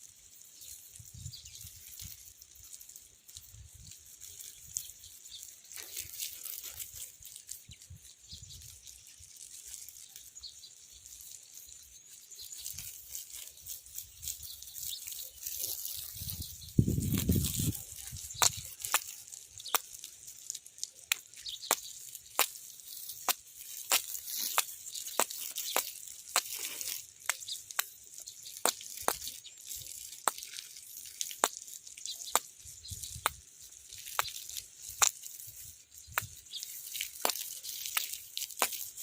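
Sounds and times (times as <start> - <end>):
water dripping: 0.0 - 39.0.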